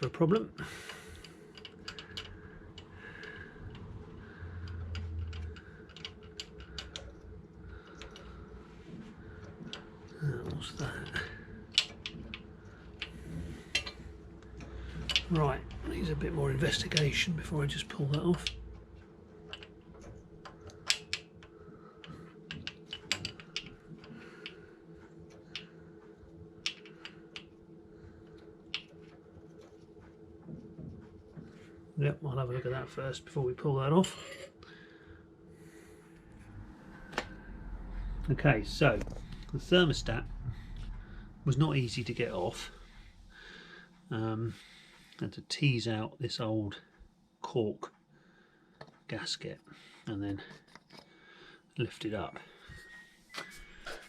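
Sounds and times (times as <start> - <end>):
hand tools clicking and tapping: 0.0 - 3.9, 4.6 - 24.6, 25.2 - 25.7, 26.6 - 27.6, 28.3 - 29.8, 50.1 - 51.2
faint steady hum: 0.0 - 54.0.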